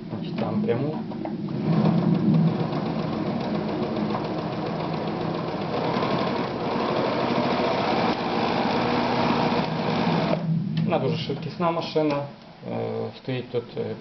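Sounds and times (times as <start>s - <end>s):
sewing machine running fast: 1.6s - 10.4s.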